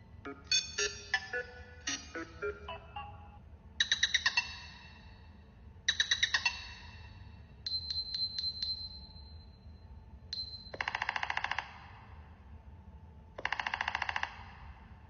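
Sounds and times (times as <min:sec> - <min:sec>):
high held tone: 0:00.6 - 0:03.4.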